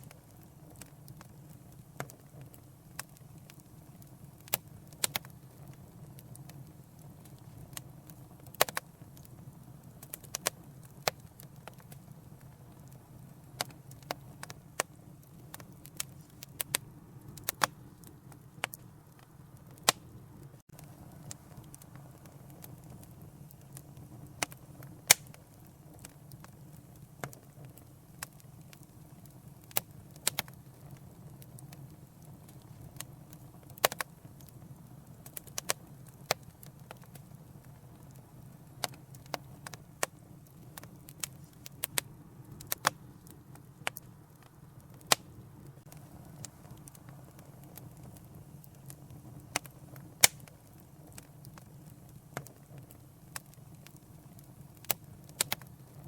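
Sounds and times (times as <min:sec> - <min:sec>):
fire pops and snaps: 0:00.0 - 0:56.0
wood fire crackling: 0:00.0 - 0:56.0.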